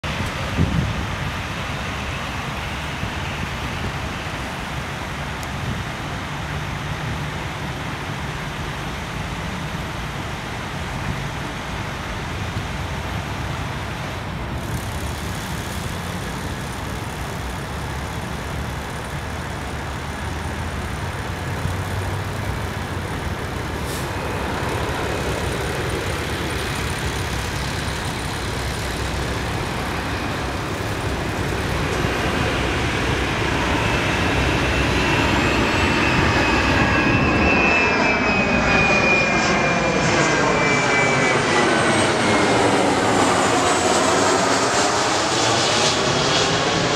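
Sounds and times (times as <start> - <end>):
road traffic passing: 1.3 - 36.8.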